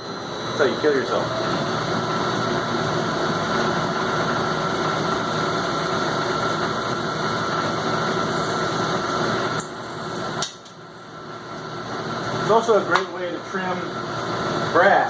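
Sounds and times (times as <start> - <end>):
metal lathe whining: 0.0 - 10.3.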